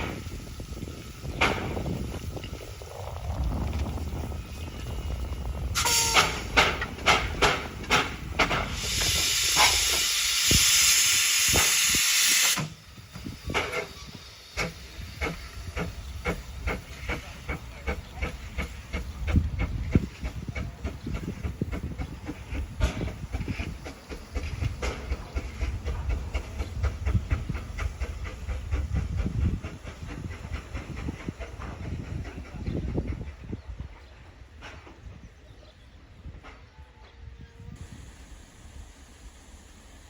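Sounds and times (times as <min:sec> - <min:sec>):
loud hiss of steam: 0:00.0 - 0:35.2, 0:37.6 - 0:40.0
steam locomotive exhaust beats: 0:00.0 - 0:36.6, 0:37.7 - 0:40.0.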